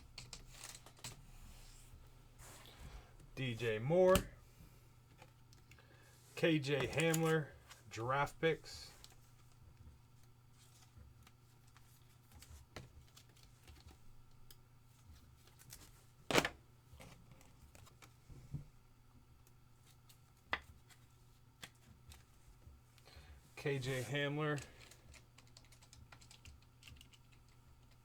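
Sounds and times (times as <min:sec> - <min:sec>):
low room hum: 0:00.0 - 0:28.0
cards rustling and sliding: 0:06.7 - 0:07.9.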